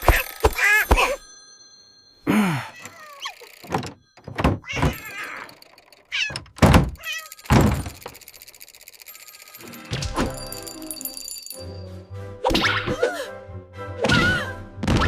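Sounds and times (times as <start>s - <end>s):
short wavering cries: 2.2s - 3.6s, 4.6s - 6.3s, 7.0s - 7.5s.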